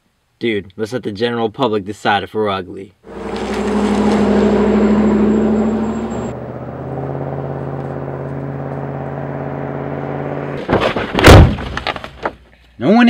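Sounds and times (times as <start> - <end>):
cars driving past: 3.1 - 10.6
low engine hum: 3.1 - 10.7.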